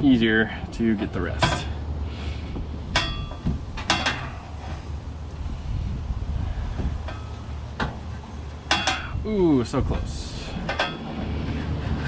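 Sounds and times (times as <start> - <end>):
steady low hum: 0.0 - 12.0
metal tools clinking on pipe: 8.7 - 9.2.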